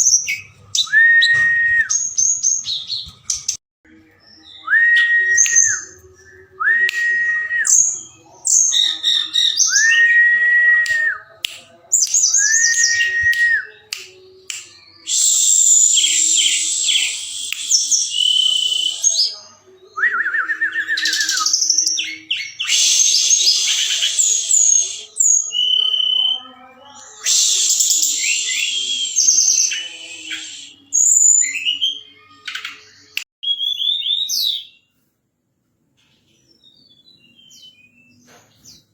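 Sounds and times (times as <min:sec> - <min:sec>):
songbird singing: 0:11.9 - 0:34.9, 0:36.0 - 0:38.9.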